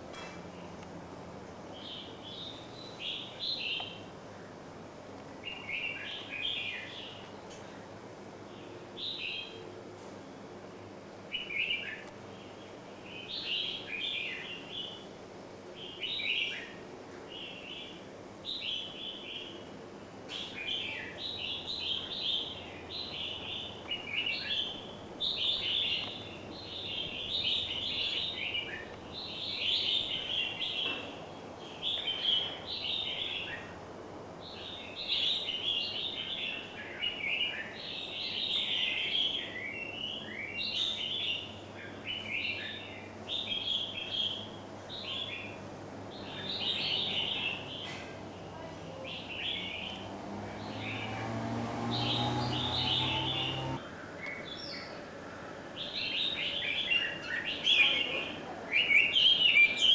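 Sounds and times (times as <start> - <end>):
small birds singing: 0.0 - 9.8, 10.4 - 33.8, 34.4 - 59.9.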